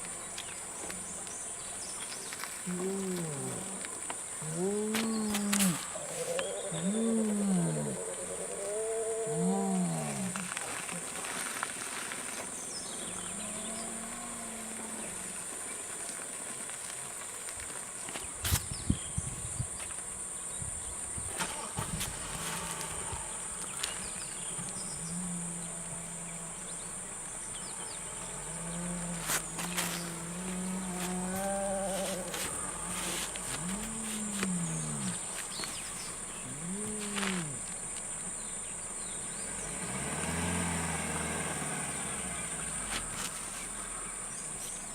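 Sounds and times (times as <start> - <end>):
insects chirring: 0.0 - 44.9
hyena calls: 4.4 - 11.1, 28.4 - 35.3.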